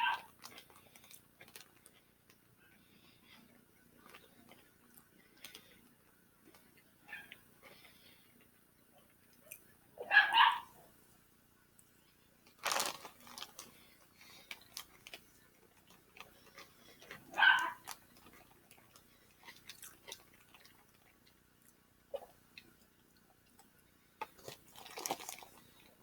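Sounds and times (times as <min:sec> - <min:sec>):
dog barking: 0:00.0 - 0:00.3, 0:10.0 - 0:10.8, 0:17.3 - 0:17.9
dog eating crunching and clicking: 0:00.1 - 0:02.5, 0:12.5 - 0:26.0.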